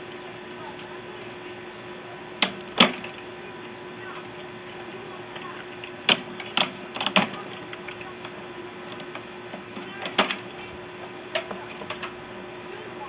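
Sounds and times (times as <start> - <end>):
faint steady hum: 0.0 - 13.0
parts and tools clicking: 2.4 - 12.2.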